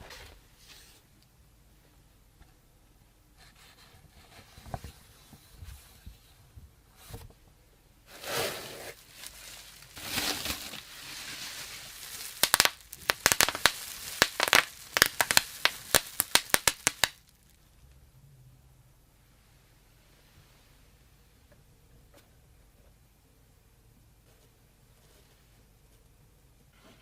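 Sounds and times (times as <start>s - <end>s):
packaging crinkling and tearing: 8.1s - 17.5s.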